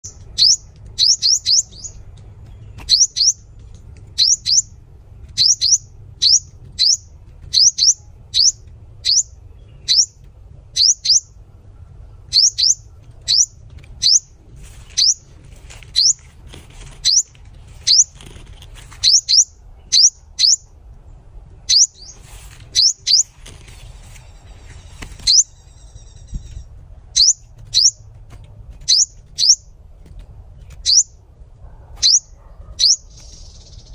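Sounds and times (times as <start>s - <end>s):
bird calling sharp high chips: 0.0s - 2.0s, 2.8s - 3.5s, 4.1s - 11.3s, 12.3s - 16.3s, 16.9s - 18.3s, 18.9s - 20.7s, 21.7s - 23.4s, 24.2s - 28.0s, 28.8s - 29.7s, 30.7s - 31.2s, 32.0s - 33.9s
rustling: 13.0s - 19.1s, 22.1s - 25.3s.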